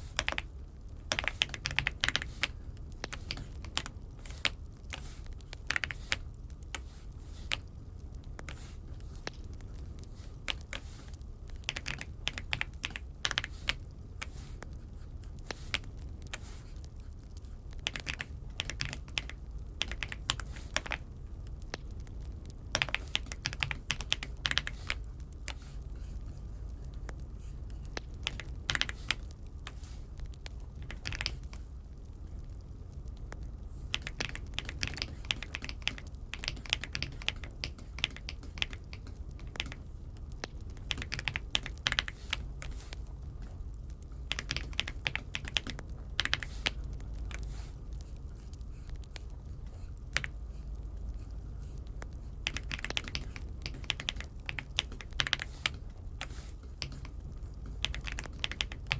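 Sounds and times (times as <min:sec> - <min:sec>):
mechanical keyboard typing: 0:00.0 - 0:06.9, 0:07.5 - 0:14.8, 0:17.7 - 0:25.8, 0:27.9 - 0:31.6, 0:33.9 - 0:43.5, 0:44.2 - 0:47.4, 0:50.0 - 0:50.4, 0:51.7 - 0:58.9.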